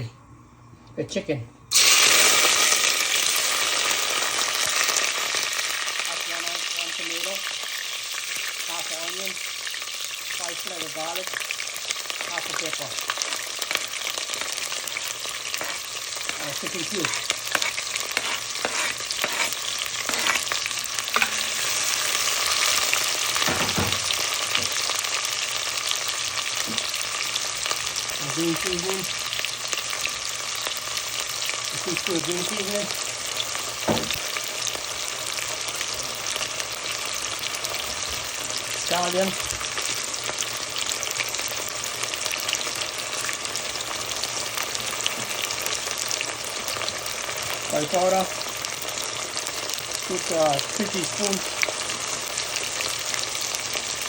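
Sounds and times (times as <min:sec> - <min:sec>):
vegetables sizzling in hot oil: 0:01.7 - 0:54.0
dull knock: 0:33.9 - 0:34.2.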